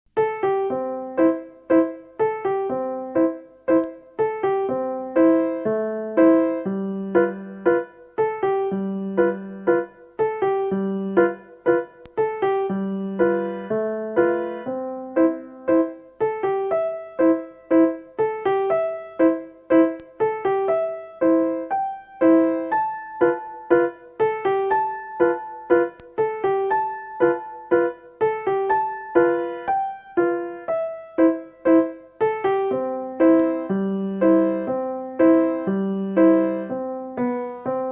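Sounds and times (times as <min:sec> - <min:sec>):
lively solo piano tune: 0:00.1 - 0:37.9.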